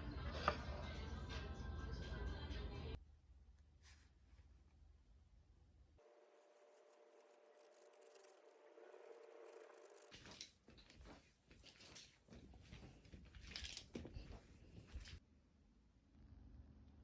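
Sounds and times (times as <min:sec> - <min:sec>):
small objects tapping and rustling: 0:10.1 - 0:15.2.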